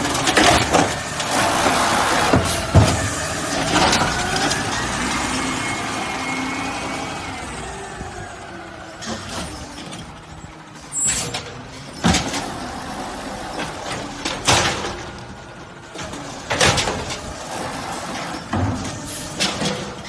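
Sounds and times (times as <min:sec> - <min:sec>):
garbage truck running: 0:00.0 - 0:20.0
sharp knocks and bangs: 0:02.2 - 0:04.2.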